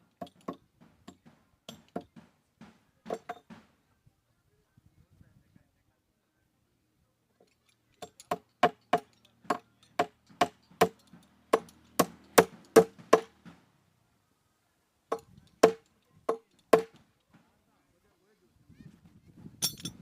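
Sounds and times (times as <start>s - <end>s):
sharp blows on wood: 8.3s - 13.6s, 15.1s - 17.1s.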